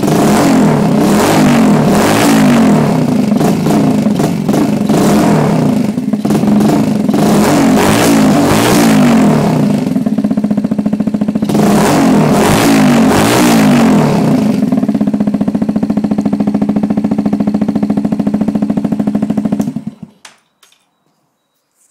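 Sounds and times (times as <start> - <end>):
motorcycle engine revving and idling: 0.0 - 20.2.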